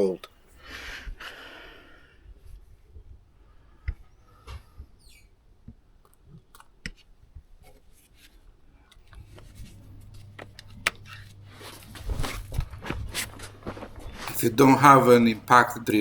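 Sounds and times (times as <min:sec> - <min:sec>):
low steady hum: 0:08.8 - 0:16.0.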